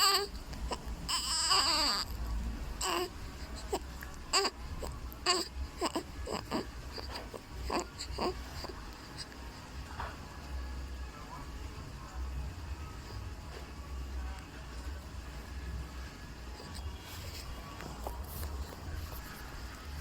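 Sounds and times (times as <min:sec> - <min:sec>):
baby crying and whimpering: 0:00.0 - 0:09.4.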